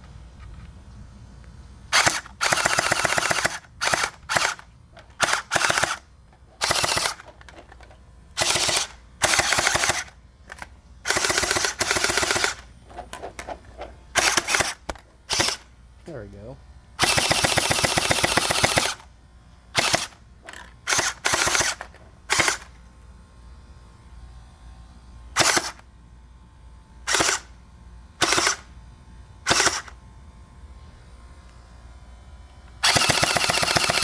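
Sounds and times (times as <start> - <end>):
gel blaster firing bursts: 1.9 - 4.6, 5.2 - 6.0, 6.6 - 7.3, 8.4 - 10.1, 11.0 - 12.7, 14.1 - 15.7, 17.0 - 19.0, 19.8 - 20.2, 20.8 - 22.7, 25.4 - 25.8, 27.1 - 27.5, 29.5 - 29.9, 32.8 - 34.0.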